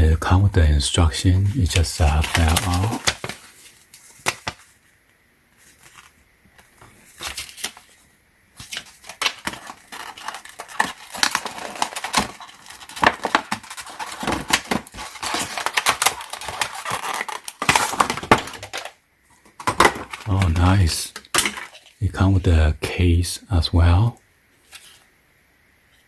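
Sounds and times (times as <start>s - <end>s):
plastic packaging crinkling and clicking: 1.3s - 4.8s, 5.6s - 8.0s, 8.6s - 22.0s.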